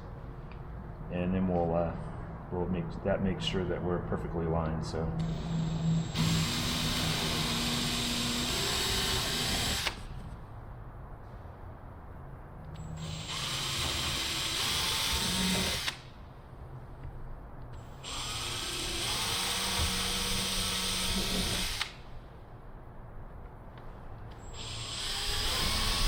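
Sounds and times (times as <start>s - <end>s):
electric drill drilling: 5.2s - 10.1s, 13.0s - 16.0s, 17.8s - 22.0s, 24.5s - 26.0s.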